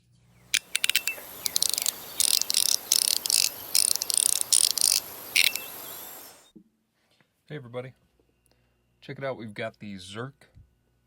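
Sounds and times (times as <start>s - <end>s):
metal fidget slider clicking: 0.5s - 5.7s.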